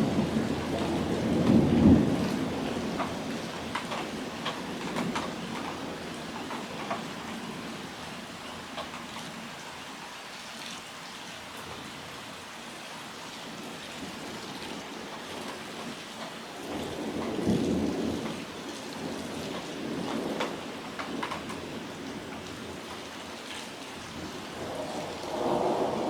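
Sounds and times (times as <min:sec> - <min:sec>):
raindrops tapping near microphone: 0:00.0 - 0:10.0, 0:12.9 - 0:26.0
heavy rain: 0:00.0 - 0:26.0
thunder rumble: 0:24.1 - 0:26.0.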